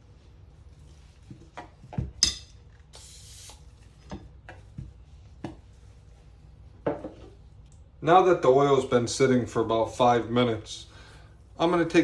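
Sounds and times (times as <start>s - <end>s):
short hiss: 2.9s - 3.7s.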